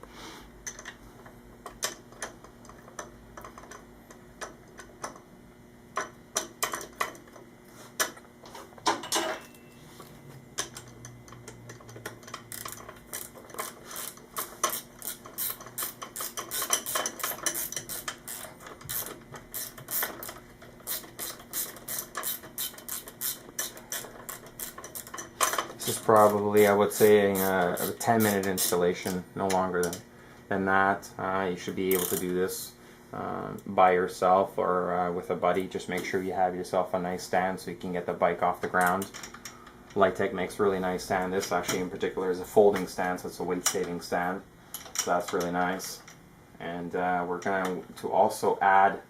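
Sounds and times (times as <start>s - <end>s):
metal tools clicking and tapping: 0.6s - 1.0s, 8.8s - 9.7s, 10.6s - 30.0s, 44.7s - 46.2s.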